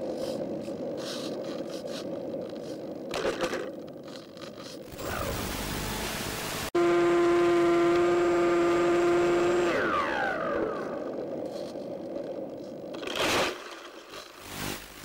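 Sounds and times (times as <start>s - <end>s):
electric motor and propeller whine: 4.8s - 15.0s.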